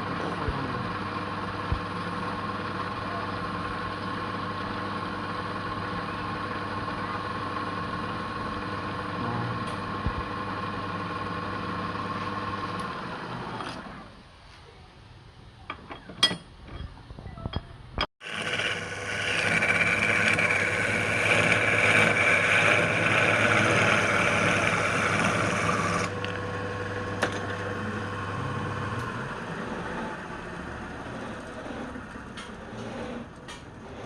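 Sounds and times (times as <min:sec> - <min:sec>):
motor whining: 0:18.2 - 0:34.0
low hum: 0:18.6 - 0:34.0.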